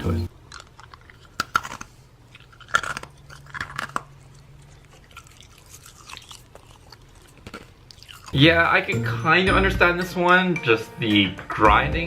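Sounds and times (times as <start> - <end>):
person chewing ice: 0.3 - 8.4.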